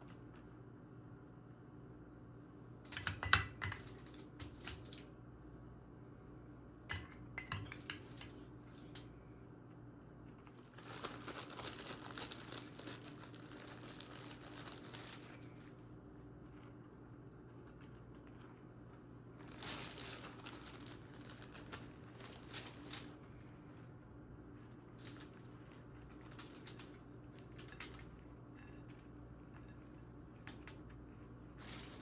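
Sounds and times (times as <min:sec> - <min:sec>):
dishes and utensils clinking: 0:02.9 - 0:04.8, 0:06.9 - 0:08.5
crinkling and rustling: 0:10.2 - 0:15.8, 0:17.5 - 0:23.9, 0:24.5 - 0:32.0.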